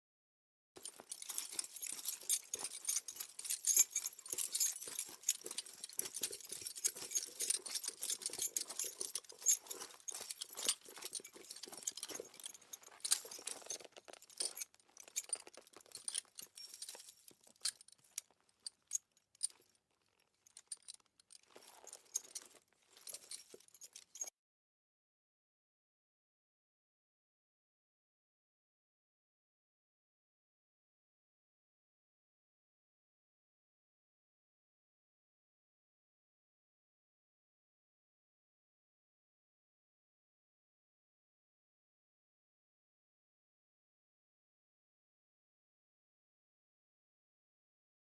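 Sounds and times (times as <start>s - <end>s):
harness fittings jingling: 0.8s - 19.8s, 20.4s - 24.3s.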